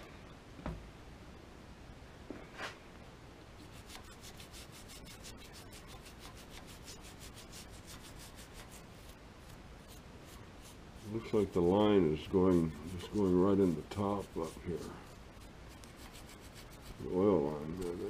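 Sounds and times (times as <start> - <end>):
rubbing strokes on machine part: 3.6 - 18.0.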